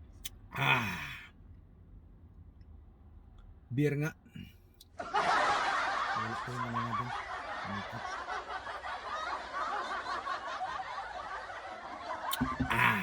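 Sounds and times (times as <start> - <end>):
man chuckling: 0.6 - 1.2, 6.1 - 8.1, 12.2 - 13.0.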